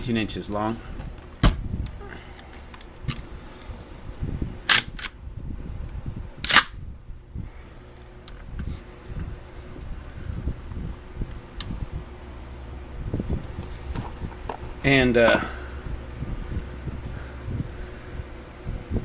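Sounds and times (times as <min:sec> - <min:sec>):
sharp mechanical clicks: 0:04.7 - 0:05.2, 0:06.4 - 0:06.8.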